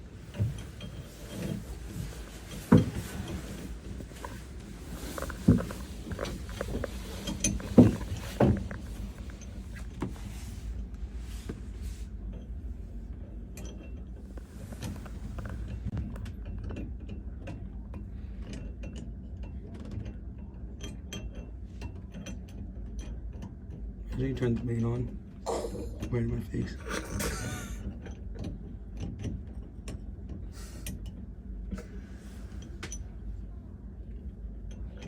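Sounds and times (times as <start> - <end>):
low steady hum: 0.0 - 35.0
tools knocking on metal: 5.0 - 8.9.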